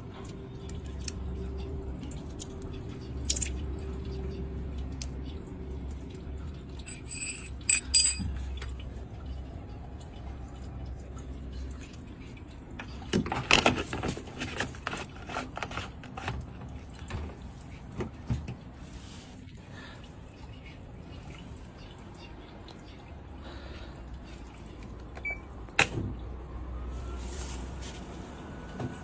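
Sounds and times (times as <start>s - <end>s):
hard parts clattering: 6.8s - 8.5s.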